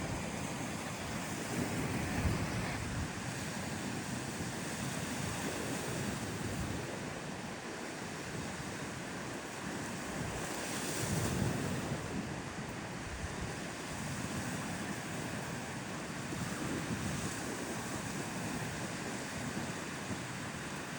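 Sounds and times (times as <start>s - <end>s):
wind buffeting microphone: 0.0s - 7.2s
surf washing onto beach: 0.0s - 20.9s.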